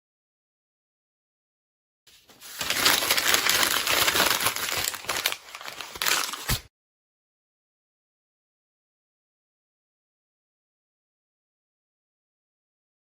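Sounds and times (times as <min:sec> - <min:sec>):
paper crumpling: 0:02.2 - 0:06.7.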